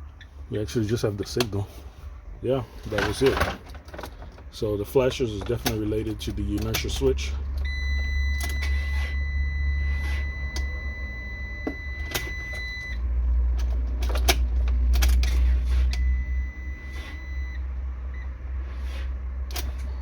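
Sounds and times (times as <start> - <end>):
high electronic warning beep: 7.7 - 13.0, 15.9 - 18.4.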